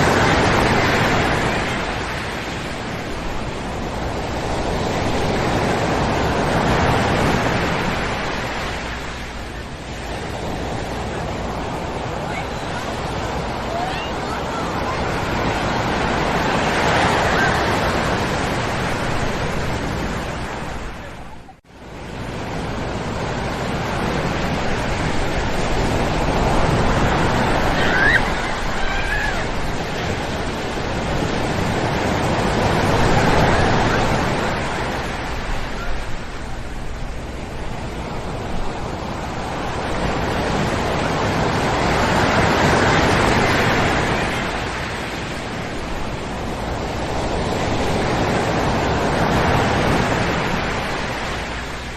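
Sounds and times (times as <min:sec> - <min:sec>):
ocean surf breaking on beach: 0:00.0 - 0:51.9
distant children's voices: 0:11.1 - 0:15.8.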